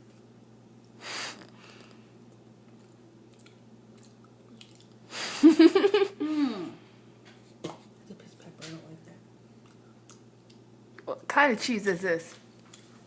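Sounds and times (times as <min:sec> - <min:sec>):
person chewing: 0:00.8 - 0:05.0, 0:09.6 - 0:10.7.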